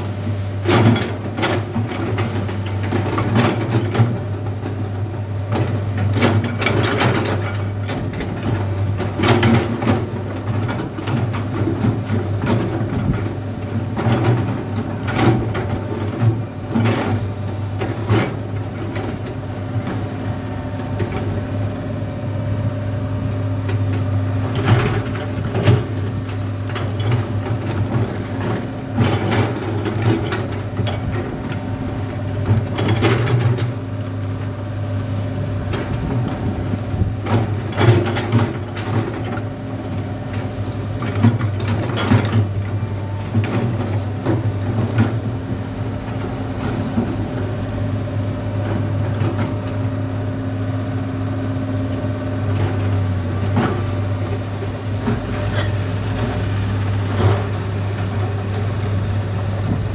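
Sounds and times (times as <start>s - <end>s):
excavator diesel engine running: 0.0s - 59.9s
bucket clattering and scraping gravel: 53.5s - 58.4s.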